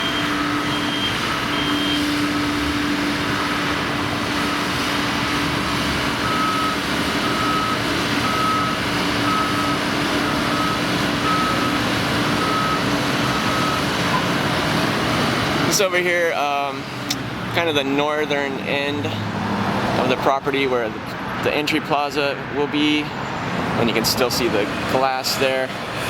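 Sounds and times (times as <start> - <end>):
backup alarm beeping: 0.0 - 3.6, 5.6 - 14.3
higher-pitched backup alarm: 0.0 - 4.6, 5.2 - 14.3
machinery and site noise: 0.0 - 26.0.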